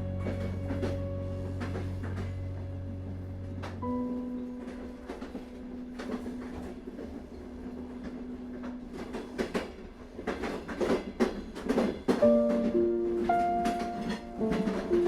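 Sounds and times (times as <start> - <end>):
soft piano note: 0.0 - 6.9, 12.2 - 15.0
train rumbling on rails: 0.0 - 15.0
wheels knocking on rail joints: 0.1 - 15.0.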